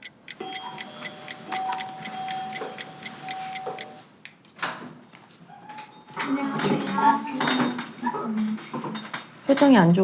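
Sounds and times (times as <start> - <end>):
even ticks: 0.0 - 4.0
held tone: 0.0 - 4.0.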